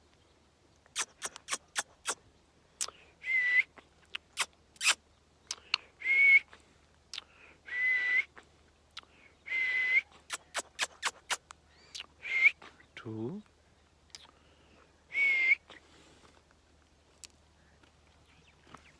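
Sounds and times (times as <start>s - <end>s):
sharp clicks: 1.0s - 2.2s.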